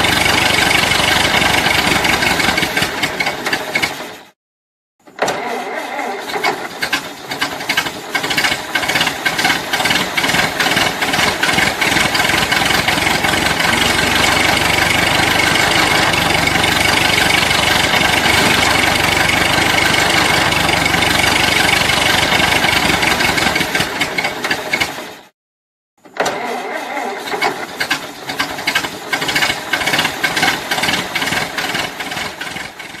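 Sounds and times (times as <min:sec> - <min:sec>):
car engine running: 0:00.0 - 0:04.3, 0:06.8 - 0:25.2
car starter cranking: 0:05.2 - 0:25.0, 0:26.2 - 0:31.3.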